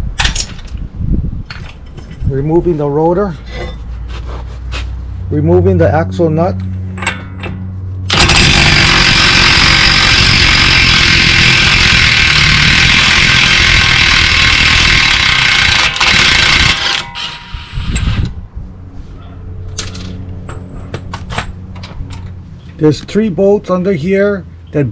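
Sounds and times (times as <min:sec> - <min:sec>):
impact wrench hammering: 0:07.1 - 0:17.6.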